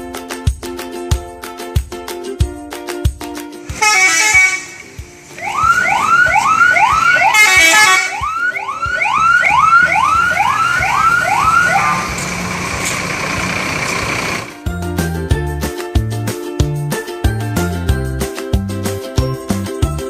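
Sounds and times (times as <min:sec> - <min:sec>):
musical bus air horns: 0:03.6 - 0:14.5.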